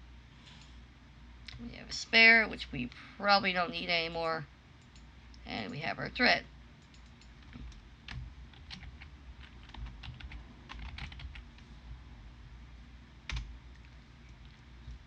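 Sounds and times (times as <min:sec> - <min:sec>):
keyboard keys clicking: 0:06.9 - 0:11.4.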